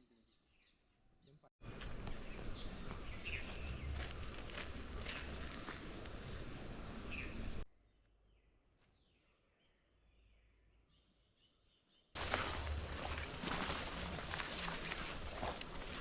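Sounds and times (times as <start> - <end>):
bird chirps: 2.1 - 4.3.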